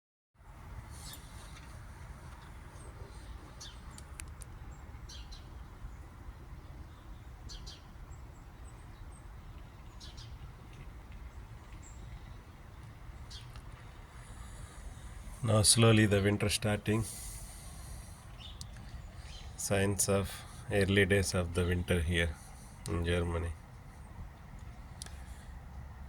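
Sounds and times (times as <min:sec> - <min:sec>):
small birds chirping: 0:00.8 - 0:25.8
steady low rumble: 0:11.2 - 0:26.0.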